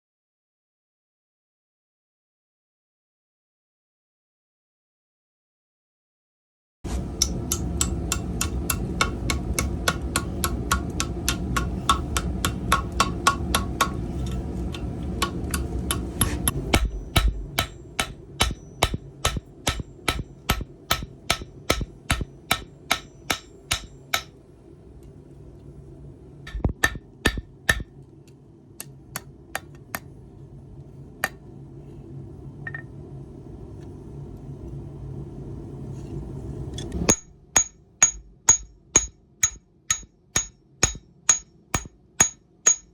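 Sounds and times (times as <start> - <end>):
hammer striking steel on anvil: 7.0 - 14.1, 14.7 - 24.4, 26.5 - 27.9, 37.1 - 42.9.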